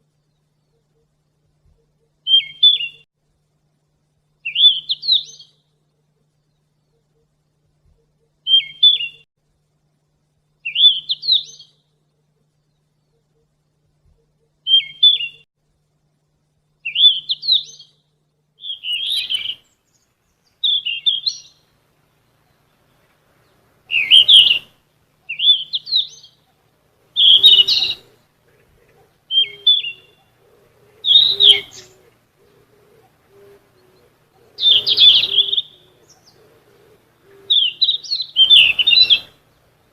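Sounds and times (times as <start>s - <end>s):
flycatcher singing high chirps: 4.4s - 5.6s, 10.6s - 11.8s, 14.6s - 15.5s, 16.8s - 18.0s, 18.6s - 21.7s, 23.9s - 26.5s, 27.1s - 28.2s, 29.3s - 32.0s, 33.6s - 36.4s, 37.5s - 39.5s.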